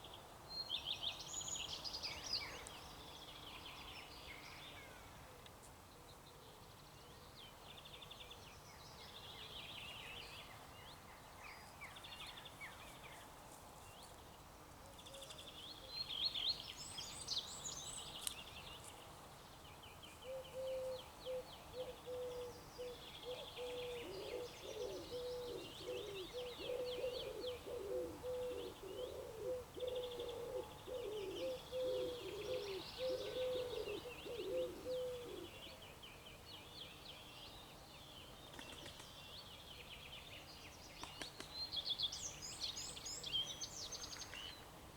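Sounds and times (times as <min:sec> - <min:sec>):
songbirds singing and chirping: 0:15.0 - 0:44.9.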